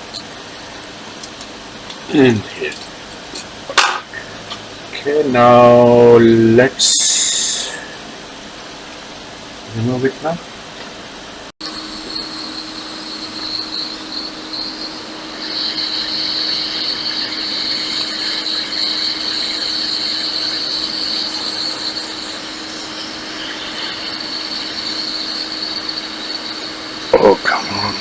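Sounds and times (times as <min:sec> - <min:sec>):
low steady hum: 0:00.0 - 0:28.0
hot air station blowing: 0:03.7 - 0:08.2, 0:11.6 - 0:28.0.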